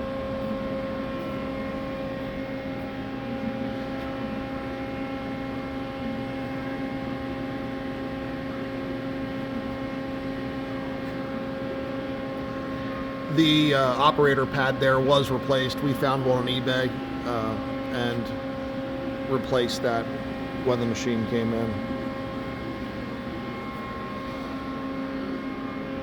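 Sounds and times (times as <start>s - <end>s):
machine tool humming: 9.2s - 26.0s.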